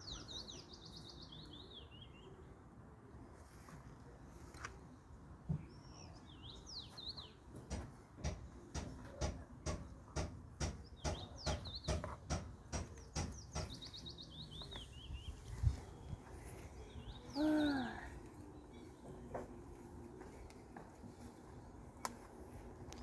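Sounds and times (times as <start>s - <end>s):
steady knocks: 7.6s - 13.8s.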